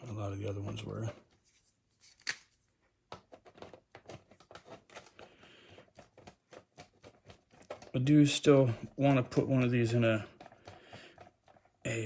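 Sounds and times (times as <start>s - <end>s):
soft rustle: 1.2s - 2.8s.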